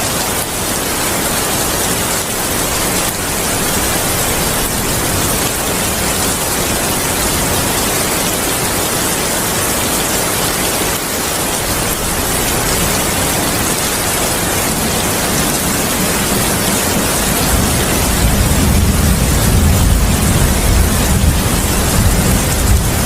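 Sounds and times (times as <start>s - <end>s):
heavy rain falling: 0.0s - 23.0s
thunder rumbling: 2.5s - 8.2s, 11.6s - 23.0s.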